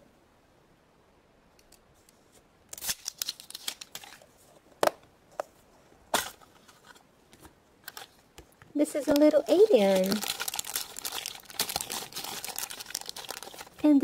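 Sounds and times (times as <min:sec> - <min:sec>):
plastic packaging crinkling: 0:02.7 - 0:04.3, 0:07.8 - 0:08.2, 0:08.8 - 0:14.0.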